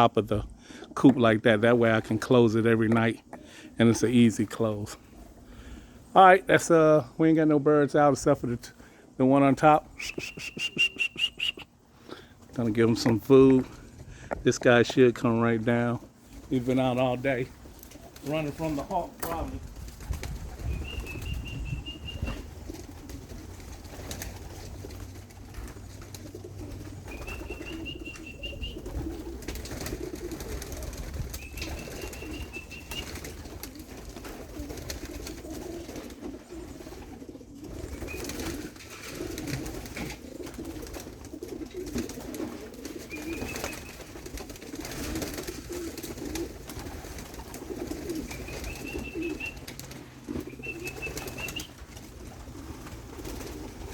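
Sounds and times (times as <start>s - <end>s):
pigeons cooing: 9.8s - 12.4s, 15.7s - 19.2s, 20.3s - 53.9s
wing flaps: 17.6s - 53.9s.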